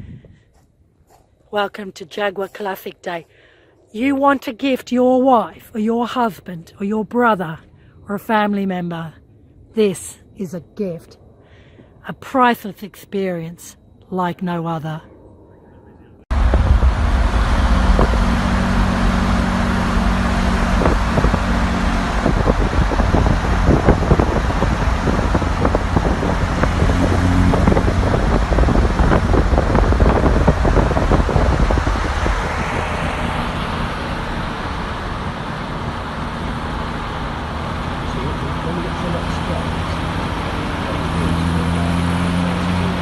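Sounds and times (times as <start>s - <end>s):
wind buffeting microphone: 0.0s - 0.6s, 16.3s - 41.7s
road and wind noise: 0.0s - 12.2s, 15.1s - 43.0s
car engine drone: 15.2s - 43.0s.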